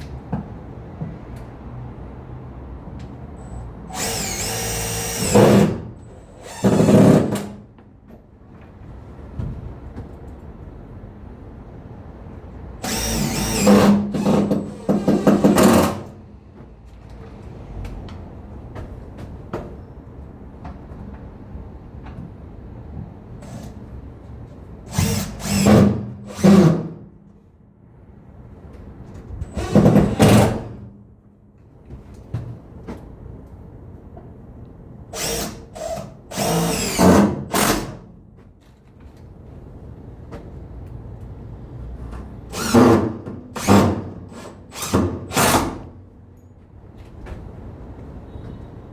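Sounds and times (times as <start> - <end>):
handheld power tool running: 3.9 - 5.8, 12.8 - 15.9
power drill running: 3.9 - 7.5, 12.8 - 16.0, 24.9 - 26.8, 29.6 - 30.4, 35.2 - 37.9, 42.5 - 45.6.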